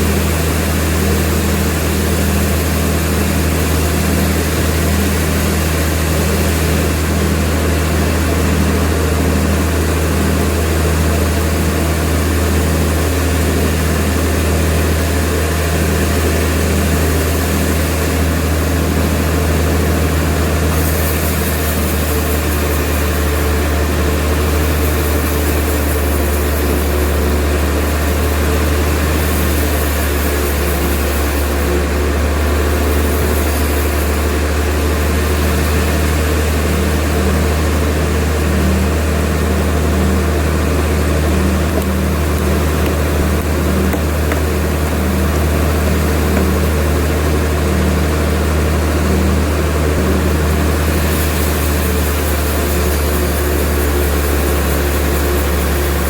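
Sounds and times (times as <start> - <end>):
machinery engine drone: 0.0 - 56.0
bright hiss: 11.5 - 47.3, 50.0 - 56.0.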